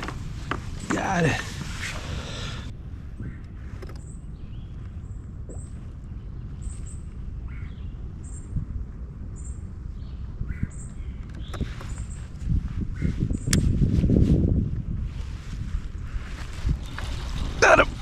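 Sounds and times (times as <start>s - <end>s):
small birds chirping: 0.0s - 13.7s
wind rumble on microphone: 0.0s - 18.0s.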